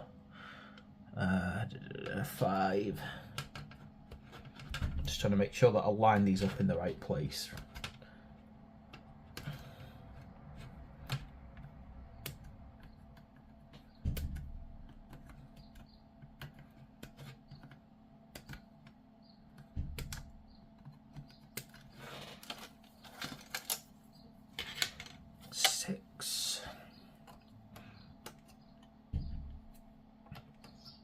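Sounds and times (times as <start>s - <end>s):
plastic pieces clicking and tapping: 7.5s - 23.9s
dull knock: 29.1s - 29.6s.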